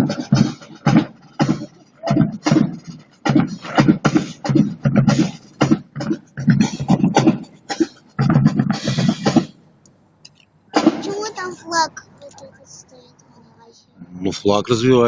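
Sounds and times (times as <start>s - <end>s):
person beatboxing: 0.0s - 9.6s.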